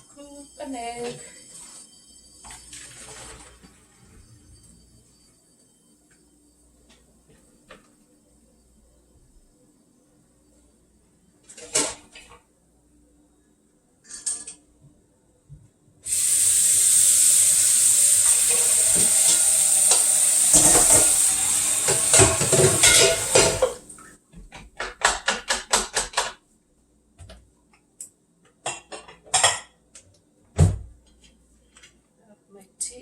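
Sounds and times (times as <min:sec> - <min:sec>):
steady hiss: 0:16.1 - 0:24.2
utensils clinking against pan: 0:18.2 - 0:23.8.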